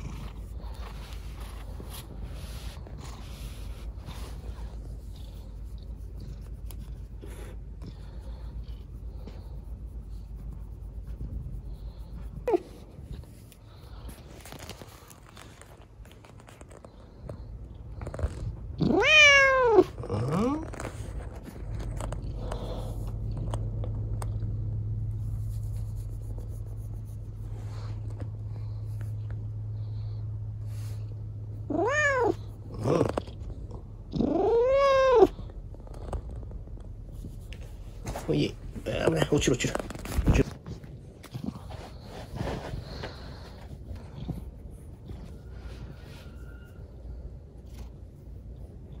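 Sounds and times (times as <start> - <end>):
cat meowing: 18.8 - 20.0, 31.7 - 32.5, 34.1 - 35.4.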